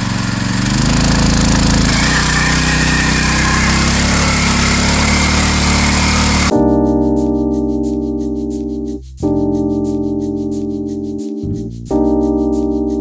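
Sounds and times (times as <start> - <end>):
small engine revving high: 0.0 - 6.5.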